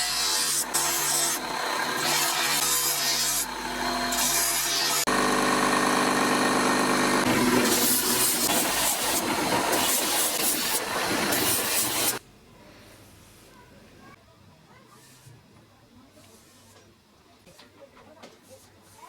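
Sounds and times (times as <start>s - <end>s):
metal grinding hiss: 0.0s - 5.1s, 7.2s - 12.2s
electric grinder motor running: 0.0s - 9.7s.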